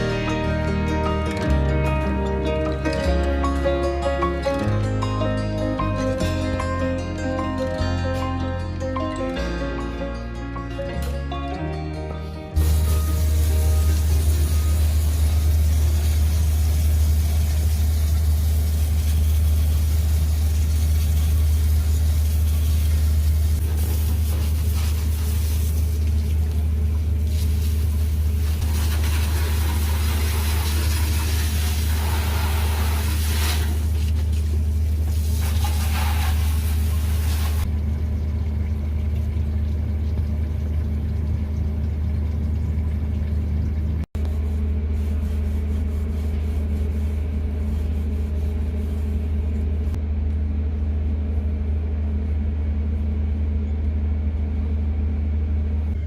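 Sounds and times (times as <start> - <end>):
low machine hum: 0.0 - 56.0.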